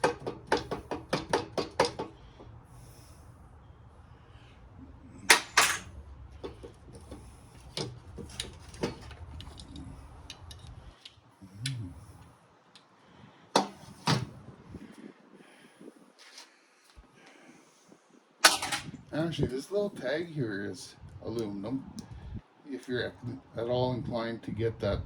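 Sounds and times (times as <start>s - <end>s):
metal tools clinking: 5.3s - 5.9s, 18.4s - 19.0s.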